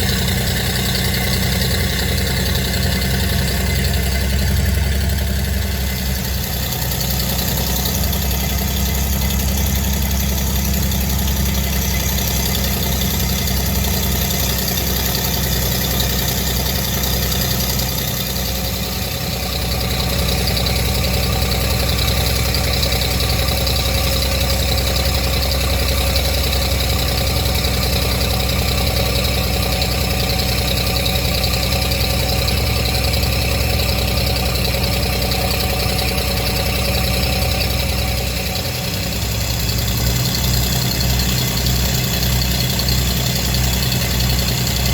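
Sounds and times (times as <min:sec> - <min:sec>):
engine running steadily: 0:00.0 - 0:44.9.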